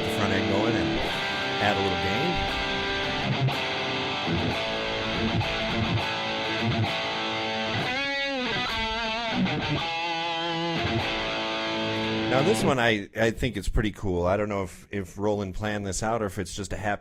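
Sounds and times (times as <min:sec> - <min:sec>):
overdriven electric guitar chords: 0:00.0 - 0:12.8.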